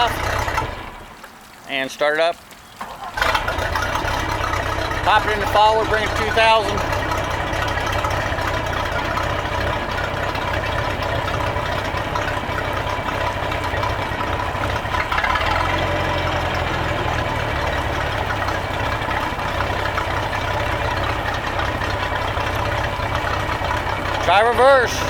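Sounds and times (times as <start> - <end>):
boat engine running: 0.0 - 1.2, 2.7 - 25.0.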